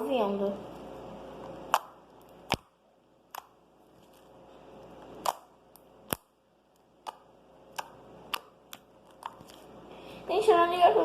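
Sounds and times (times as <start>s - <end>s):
sharp clicks and pops of slime: 1.7s - 3.6s, 5.2s - 6.3s.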